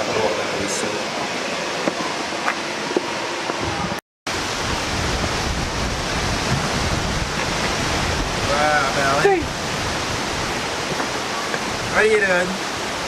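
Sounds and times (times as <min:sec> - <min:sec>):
wind on microphone: 0:03.6 - 0:13.0.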